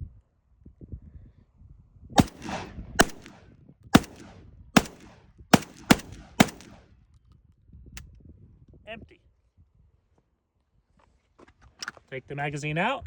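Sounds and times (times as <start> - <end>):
shotgun shots with echo: 2.2 - 3.4, 4.0 - 6.8.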